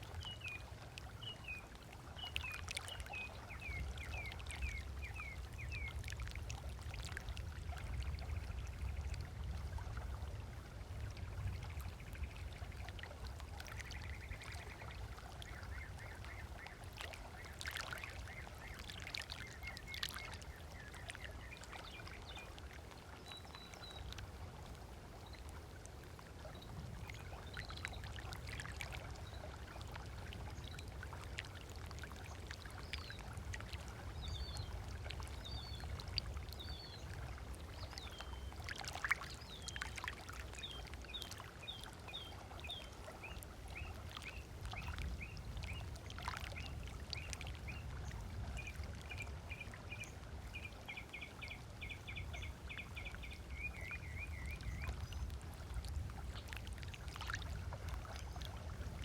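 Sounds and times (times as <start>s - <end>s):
waves lapping on sandy shore: 0.0s - 8.1s.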